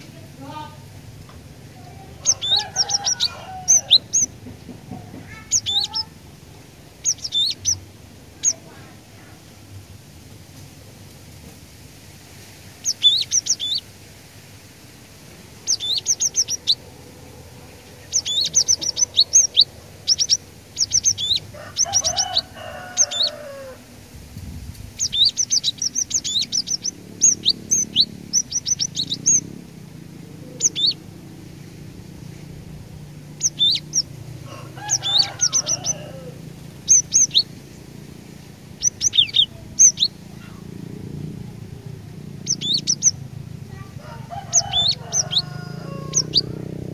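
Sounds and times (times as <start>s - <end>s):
bird singing rapid high chirps: 1.9s - 8.8s, 12.7s - 13.9s, 15.5s - 23.4s, 24.9s - 32.4s, 33.1s - 34.2s, 34.8s - 40.7s, 42.2s - 43.8s, 44.4s - 46.6s.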